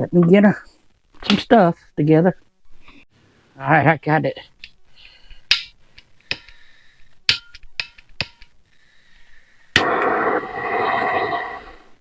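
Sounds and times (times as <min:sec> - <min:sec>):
sharp clicks and taps: 0:05.5 - 0:06.6, 0:07.2 - 0:08.6
heat tool hissing: 0:09.8 - 0:12.0.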